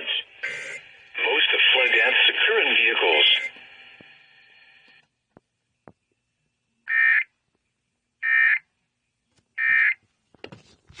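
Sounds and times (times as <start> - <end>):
buzzy digital data bursts: 0.0 - 3.5.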